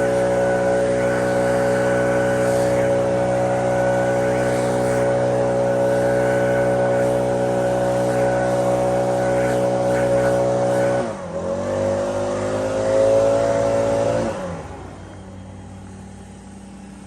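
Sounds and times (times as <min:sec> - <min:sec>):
lawn mower engine droning: 0:00.0 - 0:17.0.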